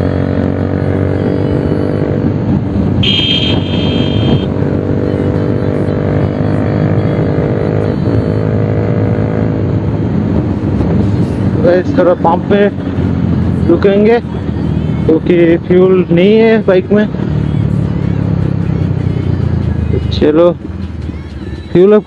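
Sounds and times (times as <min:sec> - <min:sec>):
brief high tone: 0:03.0 - 0:04.5
motorcycle exhaust note: 0:03.0 - 0:04.9.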